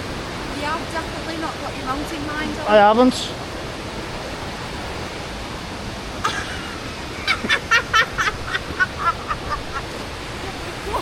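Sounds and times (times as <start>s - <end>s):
rushing waterfall: 0.0s - 11.0s.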